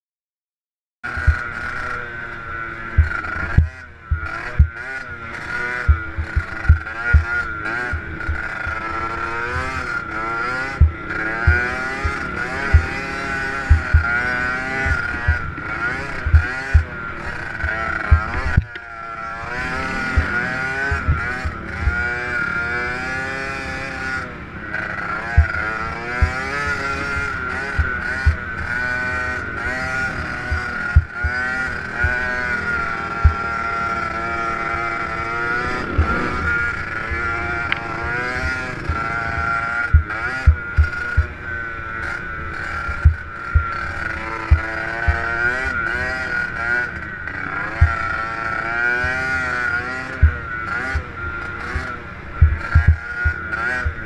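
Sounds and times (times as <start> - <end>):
motorcycle engine revving: 1.0 - 54.0
short low thumps: 2.9 - 4.8, 5.8 - 8.8, 10.6 - 15.6, 16.2 - 17.0, 17.6 - 18.8, 19.7 - 22.1, 27.1 - 28.6, 30.4 - 31.4, 33.2 - 33.4, 38.4 - 41.3, 42.9 - 43.8, 44.5 - 45.3, 50.2 - 50.4, 52.4 - 54.0.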